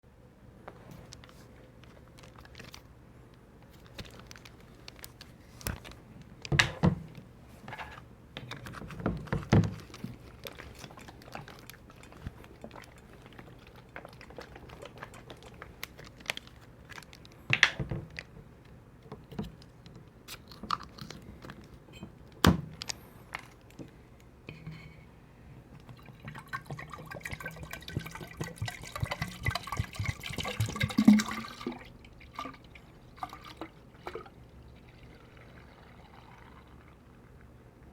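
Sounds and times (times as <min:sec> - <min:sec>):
person gulping: 0:25.9 - 0:32.6.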